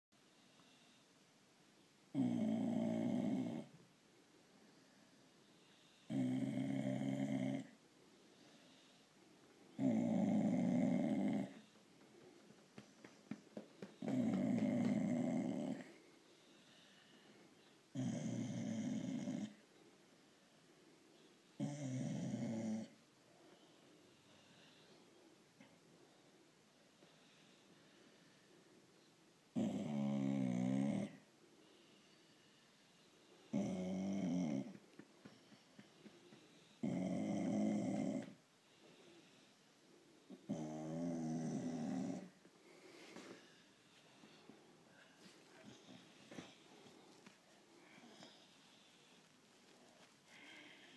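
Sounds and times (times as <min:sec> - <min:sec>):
dog grunting and snoring: 0:02.1 - 0:03.8, 0:06.1 - 0:07.8, 0:09.7 - 0:11.8, 0:13.9 - 0:16.0, 0:17.9 - 0:19.6, 0:21.6 - 0:23.0, 0:29.5 - 0:31.3, 0:33.5 - 0:38.4, 0:40.3 - 0:42.4.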